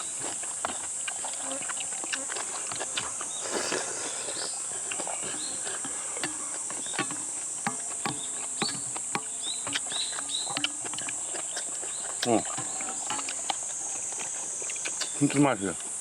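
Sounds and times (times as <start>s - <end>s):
insects chorus: 0.0s - 16.0s
utensils clicking against bowls: 4.6s - 16.0s.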